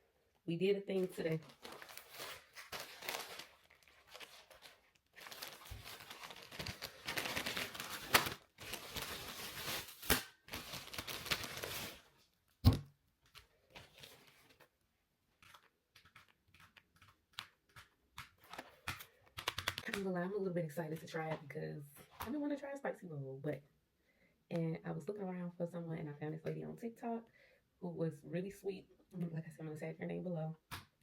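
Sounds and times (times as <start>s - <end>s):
plastic packaging crinkling and tearing: 1.0s - 12.2s.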